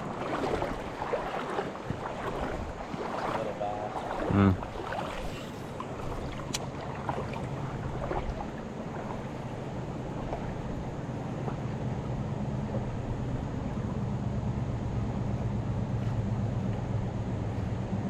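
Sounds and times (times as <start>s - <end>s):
river current rushing: 0.0s - 11.8s.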